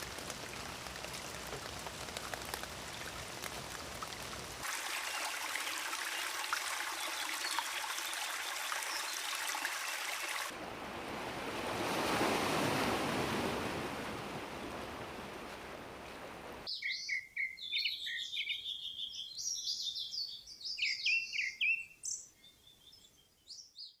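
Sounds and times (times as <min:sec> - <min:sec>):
rain pattering: 0:00.0 - 0:08.3
rushing water: 0:00.0 - 0:16.7
birds chirping and singing: 0:16.7 - 0:24.0.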